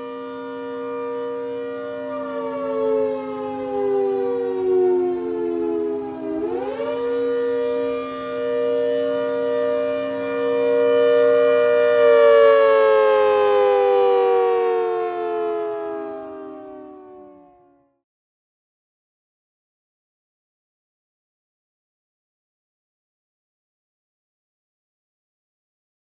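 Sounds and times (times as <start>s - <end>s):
outdoor warning siren winding: 0.0s - 17.9s.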